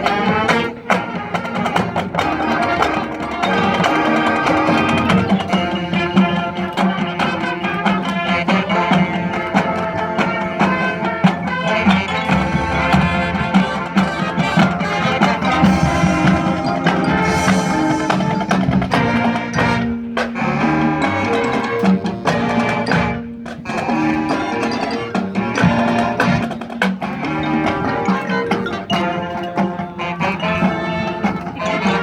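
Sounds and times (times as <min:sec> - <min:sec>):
marching band playing: 0:00.0 - 0:32.0
drums struck: 0:12.2 - 0:23.3.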